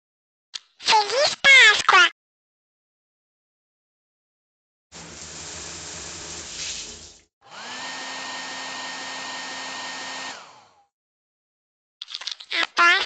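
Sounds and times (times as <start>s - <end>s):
hair dryer motor whirring: 7.4s - 10.9s.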